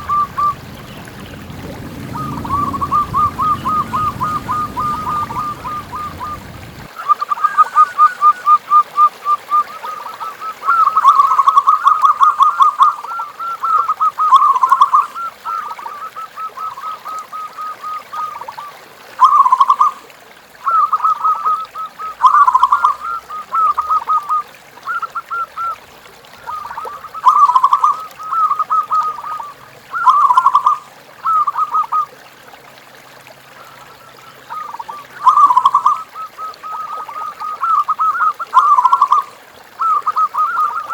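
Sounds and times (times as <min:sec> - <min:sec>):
doves cooing: 0:00.0 - 0:06.9, 0:26.4 - 0:32.1, 0:34.4 - 0:40.9.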